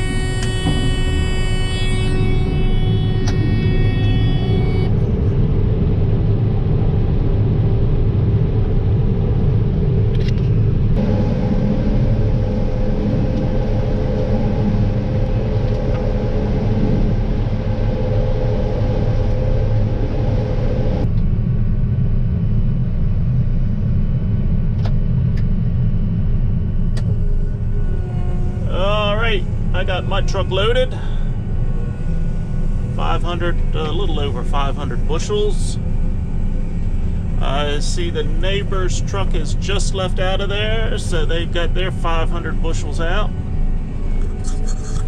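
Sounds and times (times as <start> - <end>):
combine harvester rumbling: 0.0 - 45.0
higher machine hum: 0.0 - 45.0.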